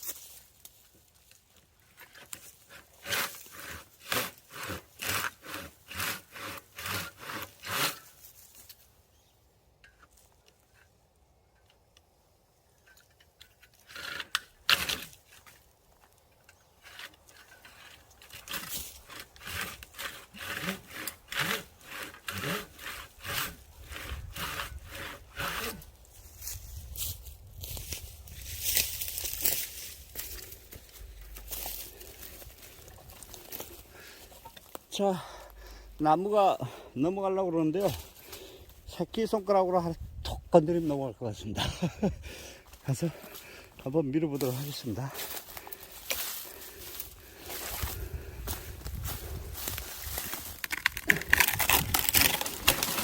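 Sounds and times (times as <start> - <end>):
hand saw cutting wood: 2.0 - 8.4, 13.7 - 15.4, 16.8 - 26.0, 44.4 - 53.0.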